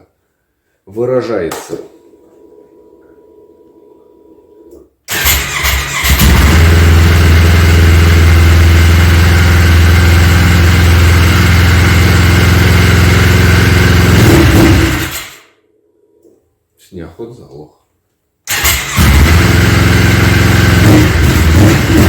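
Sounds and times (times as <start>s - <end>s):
snowmobile engine starting and running: 4.7s - 15.5s, 18.5s - 22.0s.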